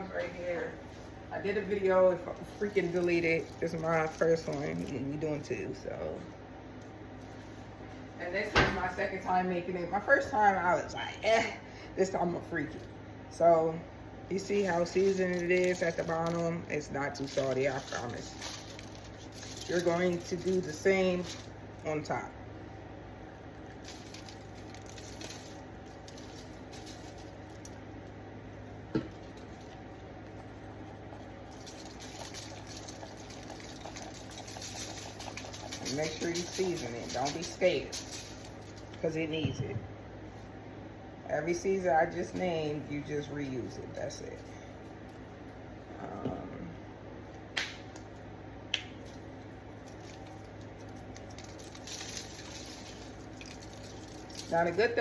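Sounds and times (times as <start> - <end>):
steady low hum: 0.0 - 55.0
seasoning shaken onto cabbage: 14.4 - 21.6, 23.8 - 27.7, 31.3 - 39.0, 49.1 - 55.0.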